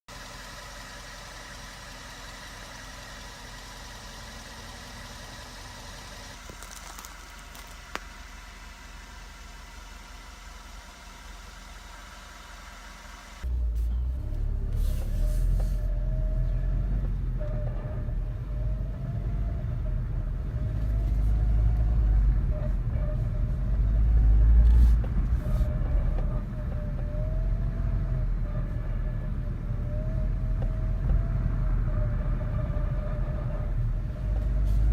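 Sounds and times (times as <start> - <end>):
car engine running: 0.1 - 34.9.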